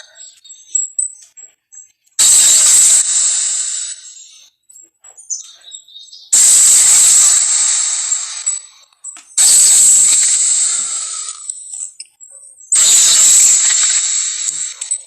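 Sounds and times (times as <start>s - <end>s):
faint chirps and clicks: 0.0s - 2.2s, 3.7s - 9.5s, 10.1s - 15.0s
harsh monster sound effect: 2.2s - 4.2s, 6.4s - 8.6s, 9.4s - 11.5s, 12.8s - 15.0s.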